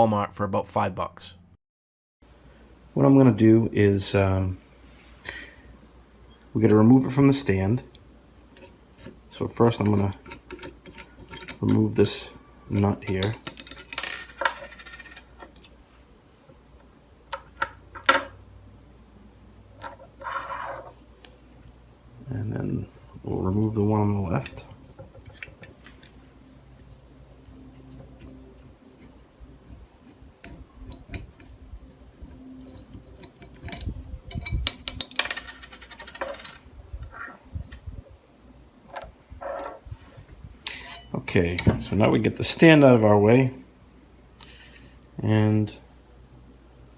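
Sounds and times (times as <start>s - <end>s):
metal hardware clicks and clinks: 9.7s - 15.7s, 30.4s - 31.6s, 32.2s - 36.6s, 40.7s - 42.0s.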